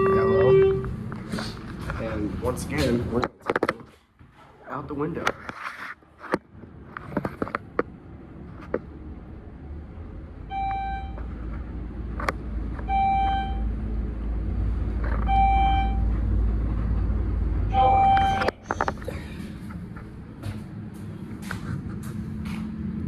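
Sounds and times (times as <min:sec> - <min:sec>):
elevator floor chime: 0:00.0 - 0:01.0, 0:10.5 - 0:11.2, 0:12.9 - 0:13.7, 0:15.3 - 0:16.1, 0:17.7 - 0:18.6
elevator rumble: 0:00.0 - 0:03.4, 0:06.5 - 0:23.0.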